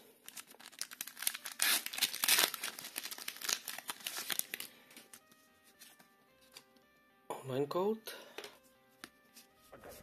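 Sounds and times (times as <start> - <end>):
foil wrapper tearing and crinkling: 0.2 - 5.2.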